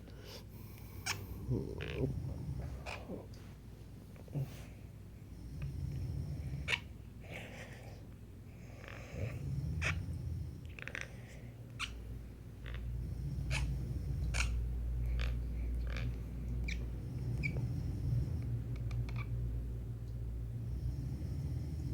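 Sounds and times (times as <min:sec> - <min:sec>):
man snoring: 0:01.0 - 0:02.7.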